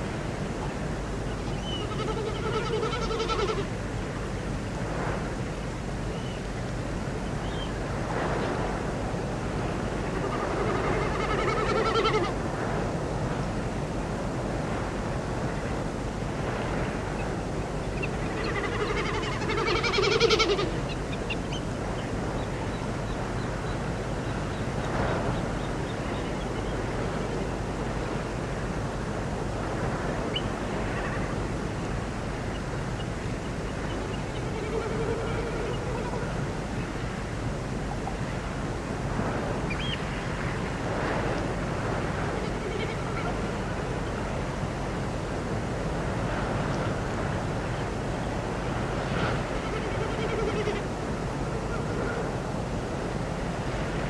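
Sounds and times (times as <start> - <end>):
animal or bird calls: 1.5 - 3.6, 10.2 - 12.3, 17.9 - 21.6, 49.7 - 50.8.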